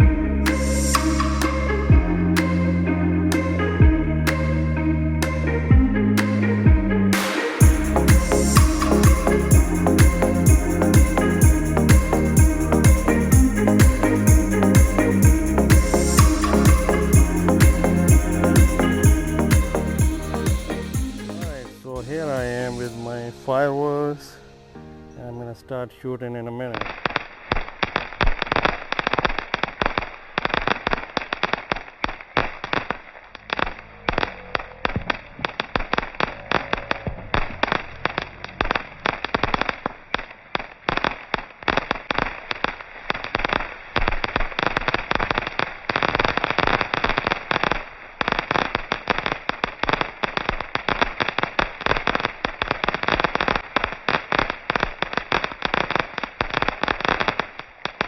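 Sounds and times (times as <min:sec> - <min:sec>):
fireworks bangs and crackles: 0:26.8 - 0:33.8, 0:34.8 - 0:58.0.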